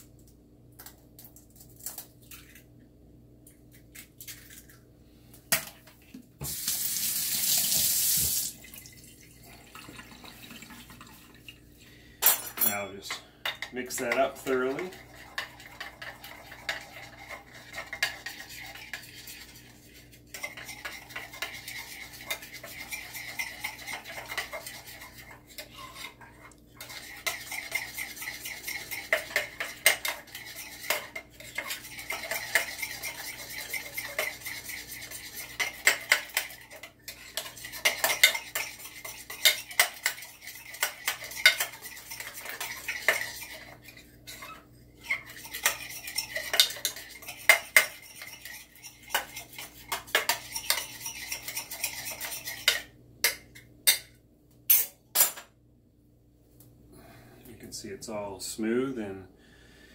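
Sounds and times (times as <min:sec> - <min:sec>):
metal utensil beating batter: 0:13.6 - 0:52.9.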